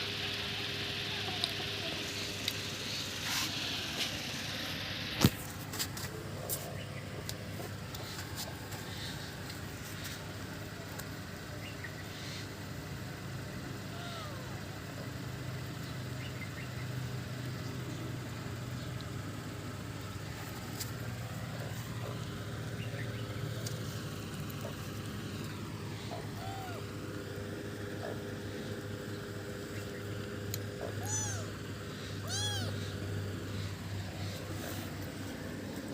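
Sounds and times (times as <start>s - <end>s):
low motor-like hum: 0.0s - 35.9s
faint short calls: 25.9s - 26.9s, 30.8s - 35.0s.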